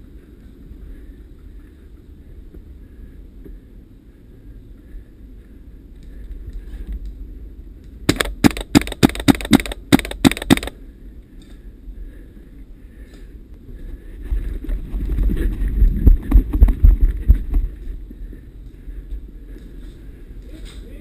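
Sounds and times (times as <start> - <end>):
airsoft gun shots: 8.1 - 10.8
low rumbling: 10.7 - 21.0.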